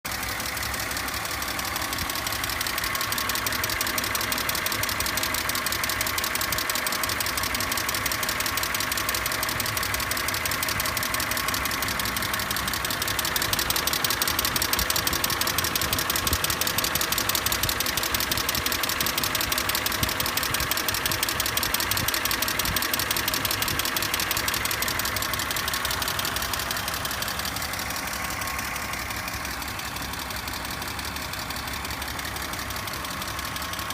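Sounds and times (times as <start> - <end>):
car engine running: 0.0 - 33.9
fast even clicking: 2.0 - 27.4.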